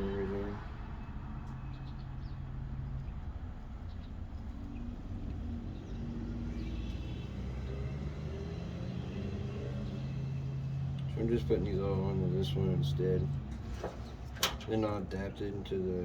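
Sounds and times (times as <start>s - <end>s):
cars passing by: 0.0s - 16.0s.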